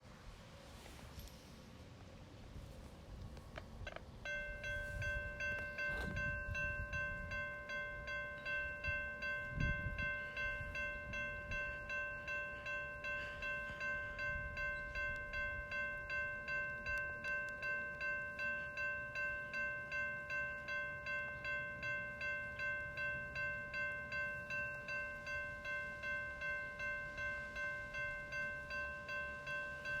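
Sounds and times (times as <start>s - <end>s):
railroad crossing bell dinging: 2.6s - 30.0s.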